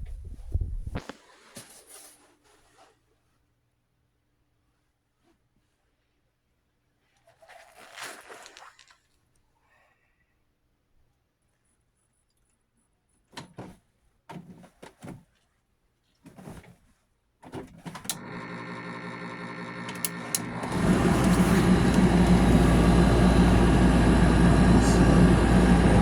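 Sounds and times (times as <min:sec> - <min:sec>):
dryer motor humming: 0:17.6 - 0:26.0.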